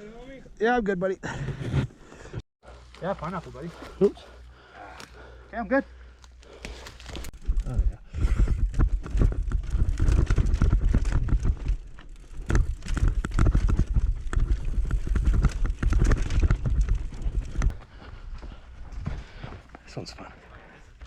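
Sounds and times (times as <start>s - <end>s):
bike tyres over dirt and rocks: 6.1s - 21.0s
bike clattering and rattling: 6.6s - 17.7s.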